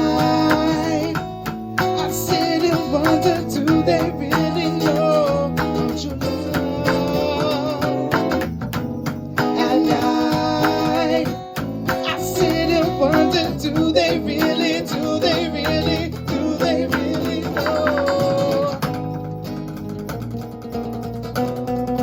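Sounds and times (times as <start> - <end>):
electric guitar: 0.0 - 22.0.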